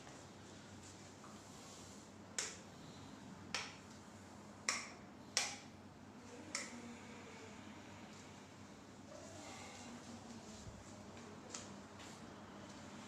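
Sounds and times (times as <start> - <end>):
sharp snaps: 2.3 - 2.7, 3.5 - 4.0, 4.6 - 5.8.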